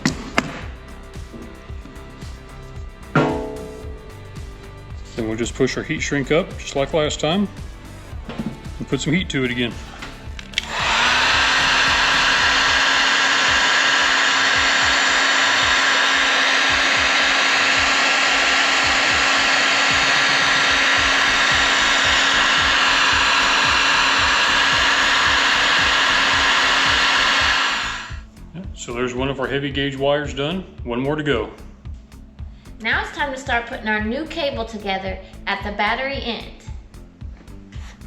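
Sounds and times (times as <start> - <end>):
heat gun fan whine: 0.0 - 28.3.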